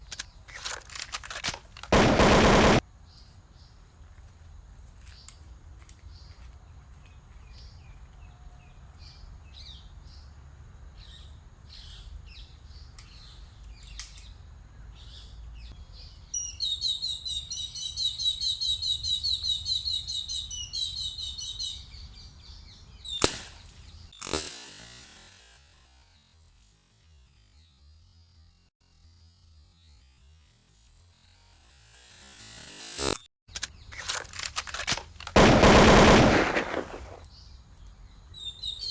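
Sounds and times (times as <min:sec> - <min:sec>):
birds chirping: 0:00.0 - 0:04.2, 0:33.5 - 0:38.9
air rifle firing: 0:00.1 - 0:02.8, 0:34.0 - 0:37.2
short loud burst of noise: 0:01.4 - 0:02.8.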